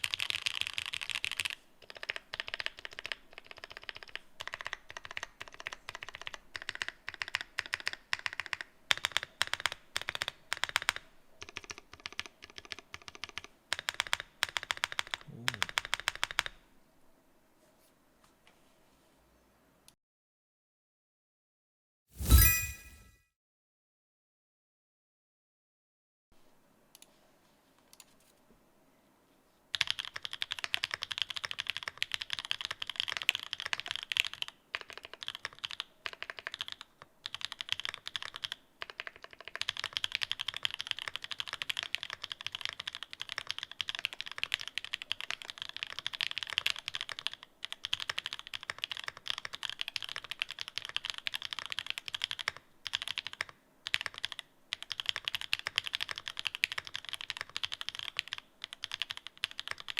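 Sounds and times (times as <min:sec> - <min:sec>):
mechanical keyboard typing: 0:00.0 - 0:16.6, 0:29.7 - 0:59.9.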